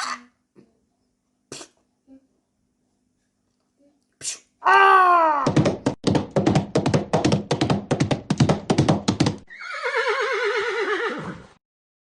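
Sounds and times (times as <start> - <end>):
galloping hooves: 5.5 - 9.5
horse whinnying: 9.5 - 11.5.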